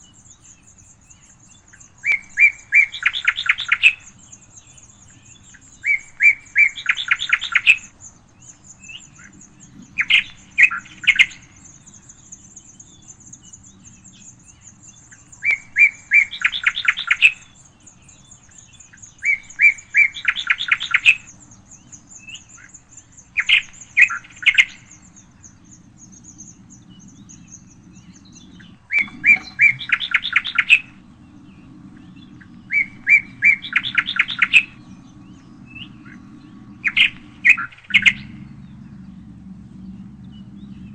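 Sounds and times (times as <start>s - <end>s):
songbird singing with trill: 0.0s - 40.9s.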